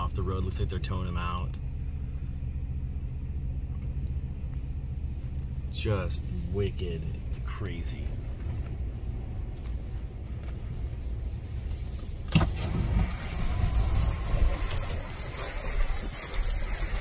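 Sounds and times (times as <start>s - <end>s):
car engine low rumble: 0.0s - 17.0s.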